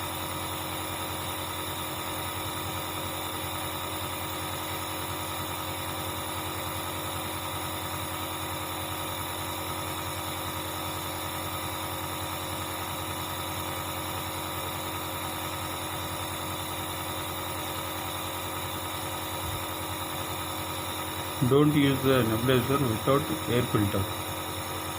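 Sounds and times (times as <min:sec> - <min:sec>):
electric compressor humming: 0:00.0 - 0:24.9.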